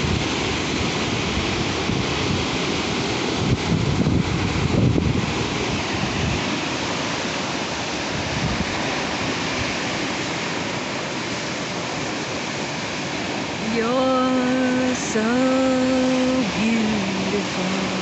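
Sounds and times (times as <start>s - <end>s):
wind buffeting microphone: 0.0s - 10.0s
waves washing on a beach: 0.0s - 18.0s.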